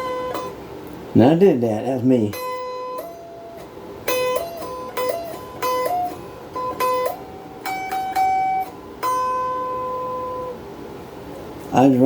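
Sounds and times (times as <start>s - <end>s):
electric guitar lead with bends: 0.0s - 0.6s, 2.3s - 10.7s.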